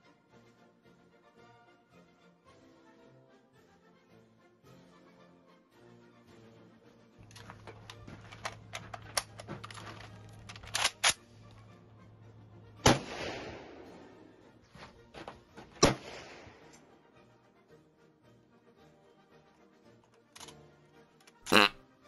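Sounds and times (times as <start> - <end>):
rifle shots with echo: 12.8 - 14.2, 15.8 - 16.7.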